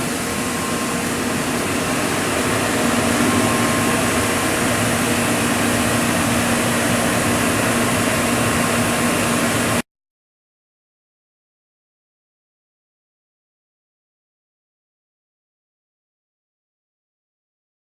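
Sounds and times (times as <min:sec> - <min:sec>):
shop machinery humming: 0:00.0 - 0:09.8.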